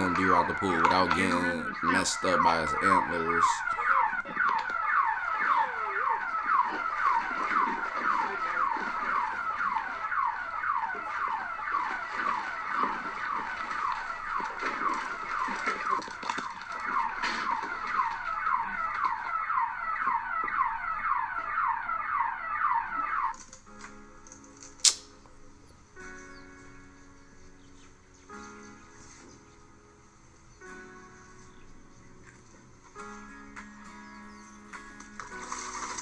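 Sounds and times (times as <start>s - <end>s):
electronic alarm chirping: 0.0s - 23.4s.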